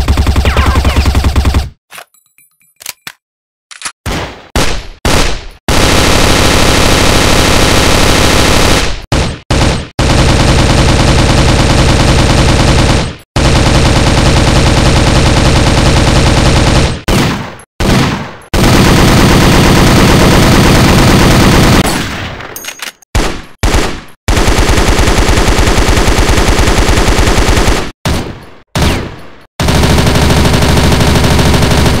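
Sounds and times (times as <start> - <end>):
automatic gunfire bursts: 4.6 - 22.1, 23.2 - 28.2, 29.6 - 32.0
single gunshots: 16.8 - 18.5.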